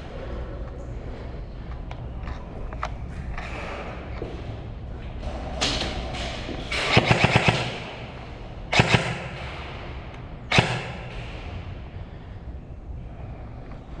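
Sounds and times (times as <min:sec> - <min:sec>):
airsoft guns firing: 0:06.7 - 0:11.6.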